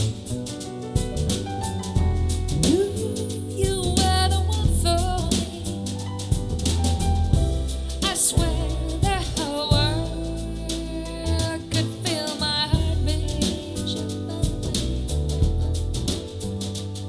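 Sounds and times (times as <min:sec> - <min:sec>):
bass line: 0:00.0 - 0:17.0
drum kit: 0:00.0 - 0:17.0
person singing: 0:08.0 - 0:14.8.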